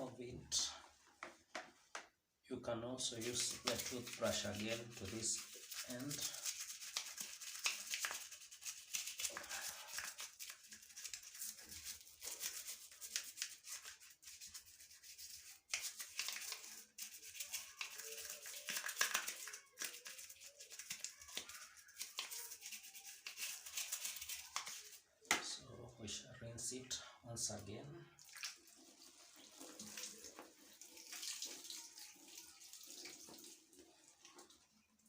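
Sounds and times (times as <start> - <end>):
toothbrush scrubbing plastic: 3.2 - 25.0, 28.3 - 34.5.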